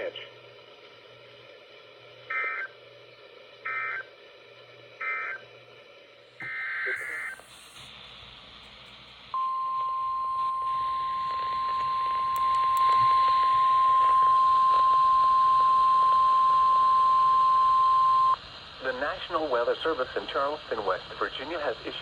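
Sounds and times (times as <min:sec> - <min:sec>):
radio hiss: 0:00.0 - 0:01.4, 0:06.4 - 0:09.4, 0:10.8 - 0:22.0
steady alarm tone: 0:02.3 - 0:02.8, 0:03.6 - 0:04.1, 0:05.0 - 0:05.5, 0:06.4 - 0:07.8, 0:09.4 - 0:18.4.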